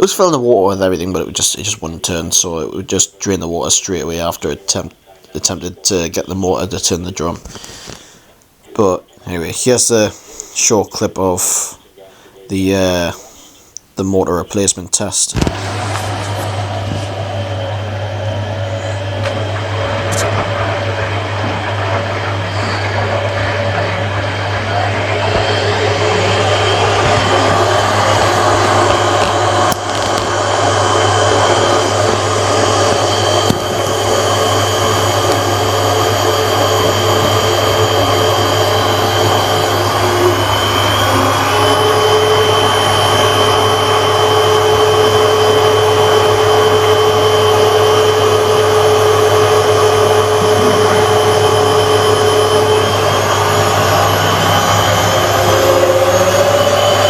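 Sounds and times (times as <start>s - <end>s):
washing machine motor whine: 0.0s - 13.3s, 14.2s - 57.0s
high tone: 22.1s - 57.0s.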